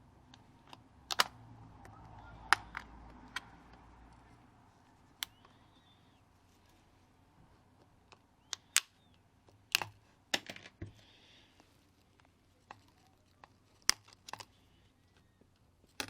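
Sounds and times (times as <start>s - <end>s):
small tools clicking and tapping: 11.6s - 16.0s.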